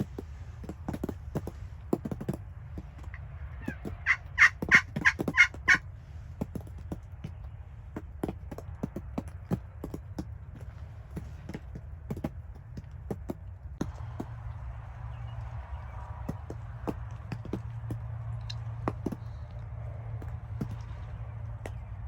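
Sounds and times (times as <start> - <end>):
turkey gobbling: 3.1 - 5.8.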